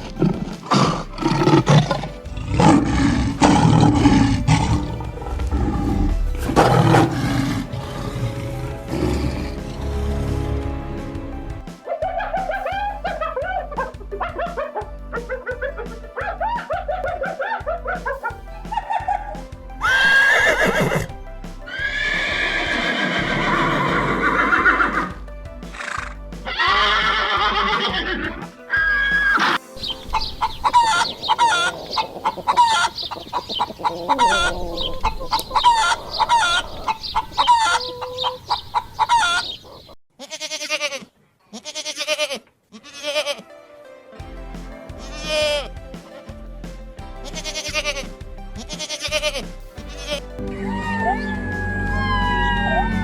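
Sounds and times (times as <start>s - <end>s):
animal calls: 0.0s - 10.0s, 11.8s - 21.1s, 21.7s - 40.0s, 48.6s - 53.0s
background music: 0.0s - 39.6s, 42.8s - 53.0s.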